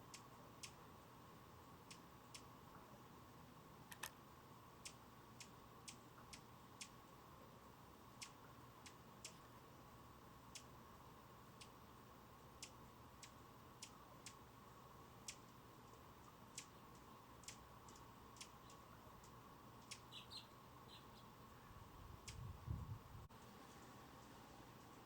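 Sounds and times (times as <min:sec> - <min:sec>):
hummingbird chip calls: 0:00.0 - 0:00.8, 0:12.5 - 0:14.5, 0:15.2 - 0:15.5, 0:16.2 - 0:22.6
faint steady hum: 0:00.0 - 0:25.0
bird twittering notes: 0:19.8 - 0:21.4.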